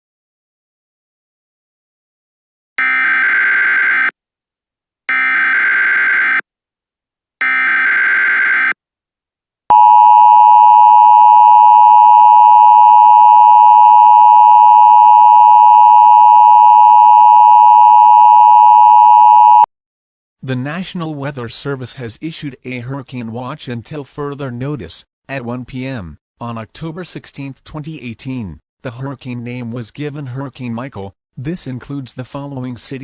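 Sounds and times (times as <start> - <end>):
two-tone alarm: 2.8 - 4.2, 5.1 - 6.4, 7.4 - 8.8, 9.7 - 19.7.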